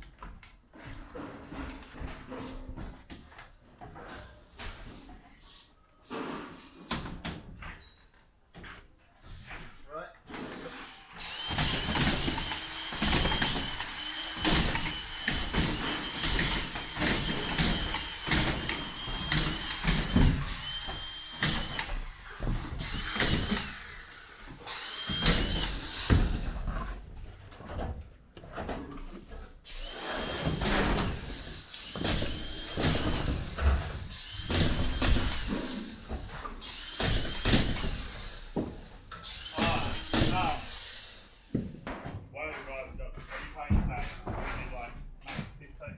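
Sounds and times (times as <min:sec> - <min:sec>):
screw gun motor whine: 0:10.8 - 0:26.7, 0:29.7 - 0:41.4
knocks and clatter on boards: 0:11.2 - 0:23.8, 0:30.4 - 0:38.9.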